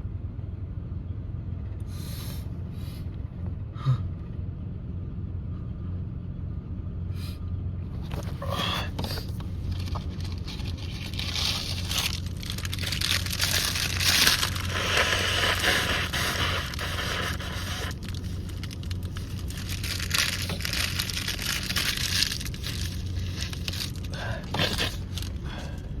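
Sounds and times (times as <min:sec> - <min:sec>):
tissue rustling and crumpling: 0:08.0 - 0:25.7
person blowing nose: 0:13.4 - 0:18.4.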